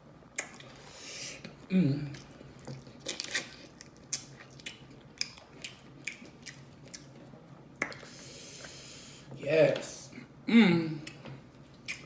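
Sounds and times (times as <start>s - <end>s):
person chewing with wet mouth smacks: 0.3s - 0.8s, 1.4s - 8.2s, 11.8s - 12.0s.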